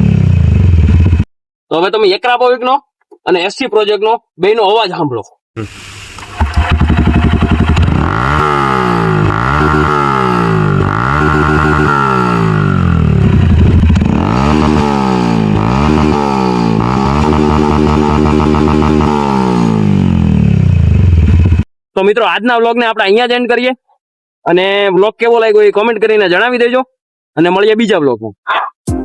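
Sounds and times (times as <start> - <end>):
motorcycle engine revving: 0.0 - 1.3, 6.2 - 21.7.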